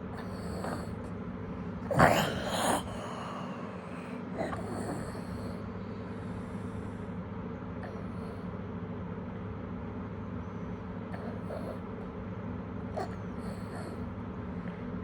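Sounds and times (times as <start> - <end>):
person snoring: 0.0 - 1.1, 1.9 - 5.6
steady low hum: 0.0 - 15.0.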